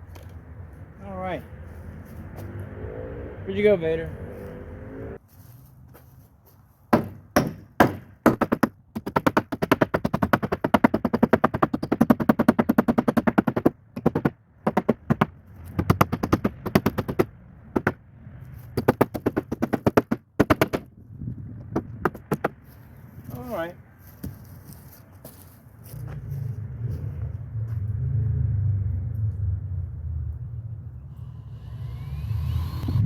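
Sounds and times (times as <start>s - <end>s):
sharp knocks on wood: 6.9s - 18.0s, 18.8s - 20.9s, 21.6s - 22.6s.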